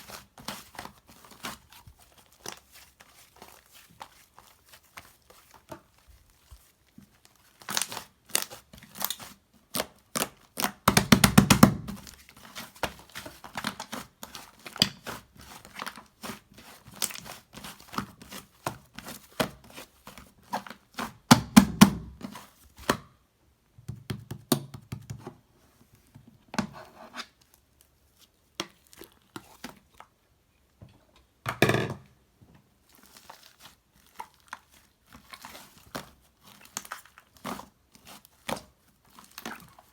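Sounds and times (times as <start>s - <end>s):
slime squishing and crackling: 0.0s - 21.6s, 27.5s - 30.1s, 32.8s - 39.9s.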